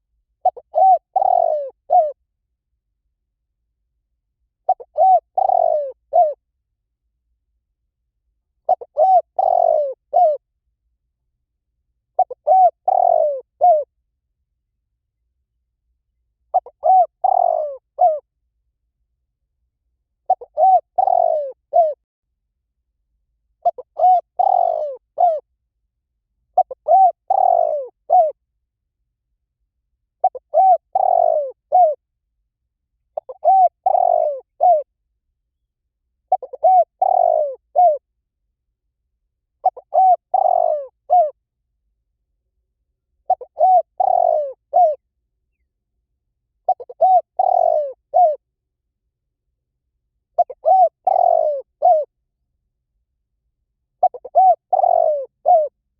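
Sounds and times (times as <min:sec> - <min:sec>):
dove cooing: 0:00.4 - 0:02.2, 0:04.6 - 0:06.4, 0:08.6 - 0:10.4, 0:12.2 - 0:13.9, 0:16.5 - 0:18.2, 0:20.3 - 0:22.0, 0:23.6 - 0:25.4, 0:26.6 - 0:28.4, 0:30.2 - 0:32.0, 0:33.2 - 0:34.9, 0:36.3 - 0:38.0, 0:39.6 - 0:41.4, 0:43.3 - 0:45.0, 0:46.7 - 0:48.4, 0:50.4 - 0:52.1, 0:54.0 - 0:55.7.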